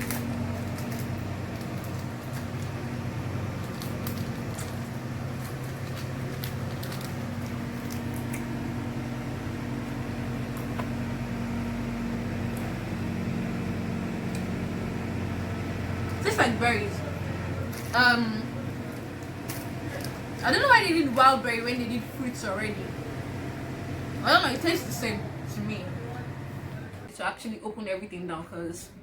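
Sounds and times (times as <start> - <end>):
faint clicks and crackles: 0.0 - 8.7
appliance humming: 0.0 - 27.2.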